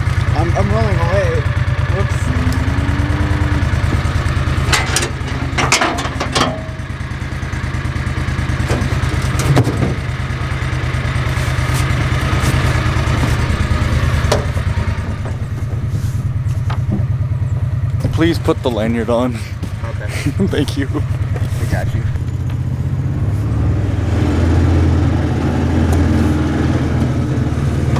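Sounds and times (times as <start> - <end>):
utility vehicle engine running: 0.0 - 27.9
knocks and rattles: 3.8 - 7.0, 8.6 - 10.1, 13.0 - 18.2.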